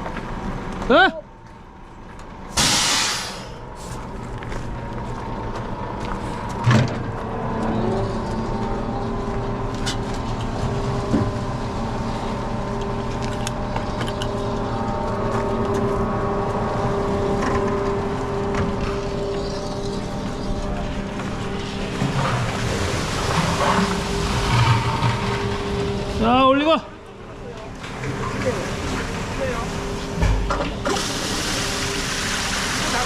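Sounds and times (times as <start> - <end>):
truck engine running: 0.0 - 32.1
short hiss: 2.6 - 3.9.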